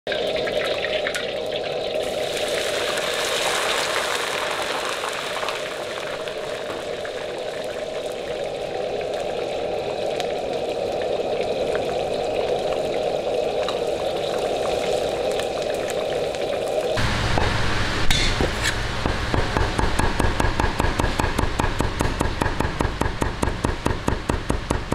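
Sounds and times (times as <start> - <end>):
liquid bubbling in a pan: 0.1 - 17.0.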